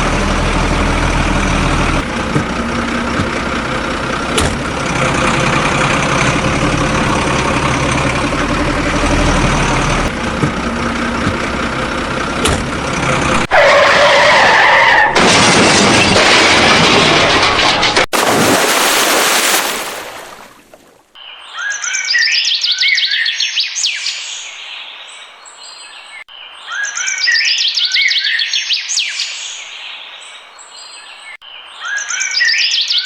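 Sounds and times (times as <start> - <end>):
birds chirping and twittering: 21.1 - 33.0.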